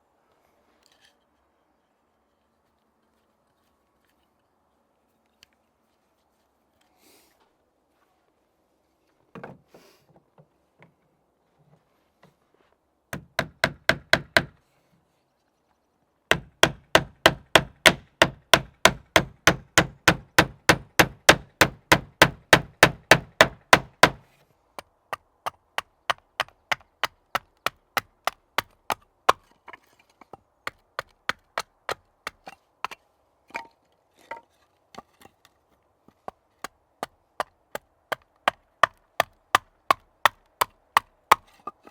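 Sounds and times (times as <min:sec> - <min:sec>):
hand tool striking wood: 0:13.2 - 0:14.5, 0:16.3 - 0:24.2, 0:25.1 - 0:33.0, 0:38.1 - 0:41.9.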